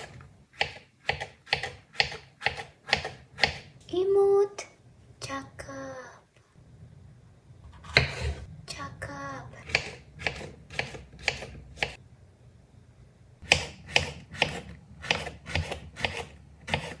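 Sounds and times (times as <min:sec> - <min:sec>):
knife slicing onto cutting board: 0:07.7 - 0:08.5.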